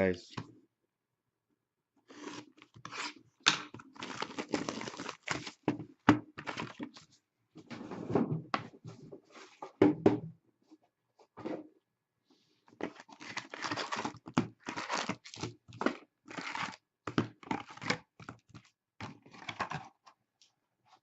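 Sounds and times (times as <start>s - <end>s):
packaging torn and crinkled: 3.8s - 5.6s, 13.0s - 15.6s.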